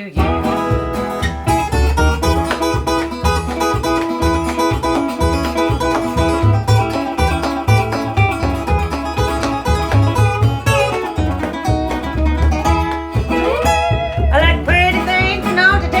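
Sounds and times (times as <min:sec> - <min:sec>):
banjo: 0:00.0 - 0:16.0
picked acoustic guitar: 0:00.0 - 0:16.0
steady bass: 0:00.0 - 0:16.0
gliding lead line: 0:00.8 - 0:16.0.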